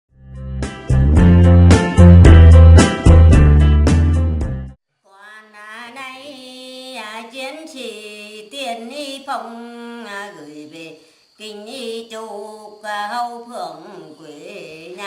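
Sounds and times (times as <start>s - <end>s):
woman singing unaccompanied: 5.1s - 15.0s.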